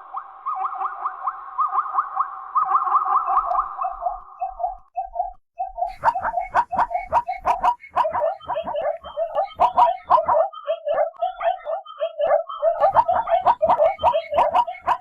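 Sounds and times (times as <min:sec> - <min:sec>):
zebra barking: 0:05.9 - 0:15.0.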